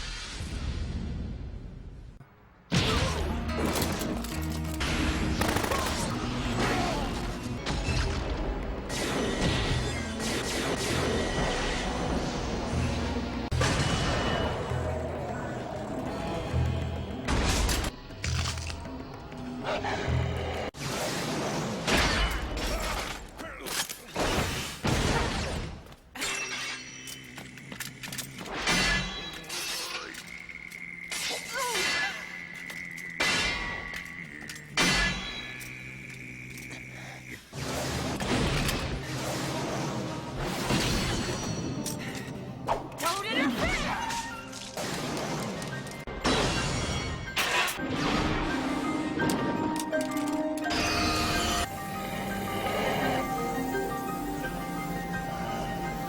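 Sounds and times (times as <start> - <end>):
dramatic music: 2.7 - 22.6, 37.5 - 56.0.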